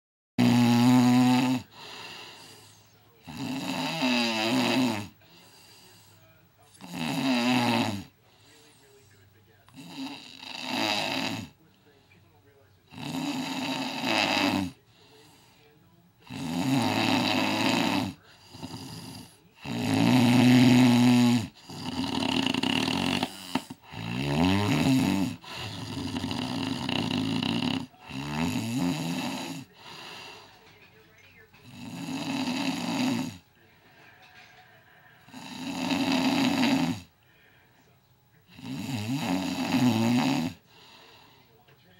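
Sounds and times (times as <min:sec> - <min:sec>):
man snoring loudly: 0:00.4 - 0:05.9, 0:06.8 - 0:08.1, 0:09.7 - 0:11.6, 0:12.9 - 0:14.8, 0:16.2 - 0:30.5, 0:31.6 - 0:33.4, 0:35.2 - 0:37.1, 0:38.5 - 0:41.2
quiet breath out: 0:01.6 - 0:03.2, 0:05.2 - 0:06.7, 0:08.2 - 0:09.7, 0:14.8 - 0:16.0, 0:25.3 - 0:26.4, 0:29.6 - 0:31.7, 0:33.6 - 0:35.4, 0:37.1 - 0:38.0, 0:40.6 - 0:41.7.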